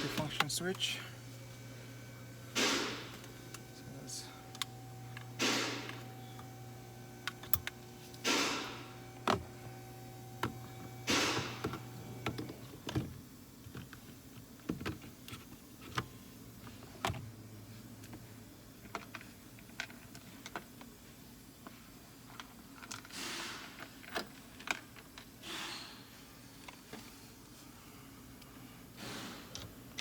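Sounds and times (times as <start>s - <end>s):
steady low hum: 0.0s - 22.7s.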